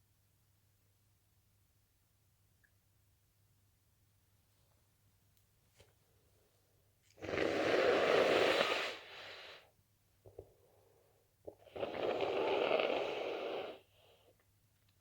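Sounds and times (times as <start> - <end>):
person blowing nose: 7.2 - 9.6, 11.6 - 13.9.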